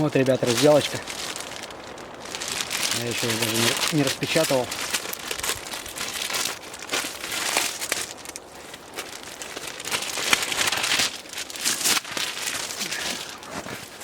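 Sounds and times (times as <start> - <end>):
packaging crinkling and rustling: 0.0 - 14.0.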